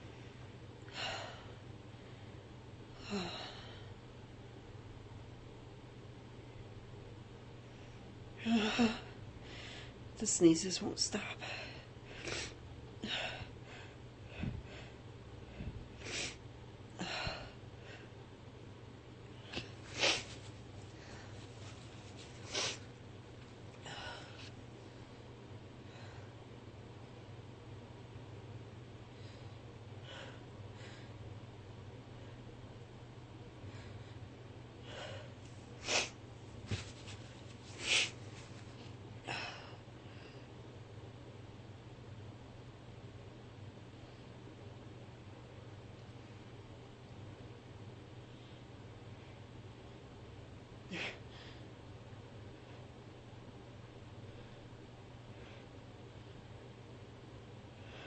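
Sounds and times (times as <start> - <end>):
woman breathing and sniffing: 19.4 - 22.9, 33.8 - 38.9.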